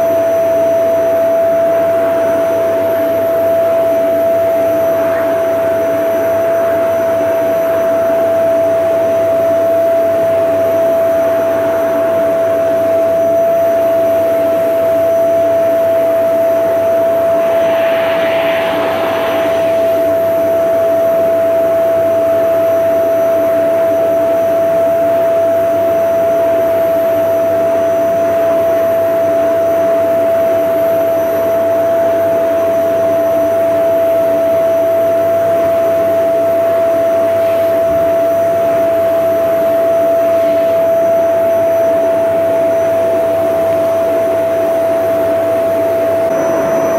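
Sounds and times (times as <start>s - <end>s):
vacuum cleaner running: 16.0s - 21.5s, 46.2s - 46.9s
brief hiss: 16.8s - 21.2s.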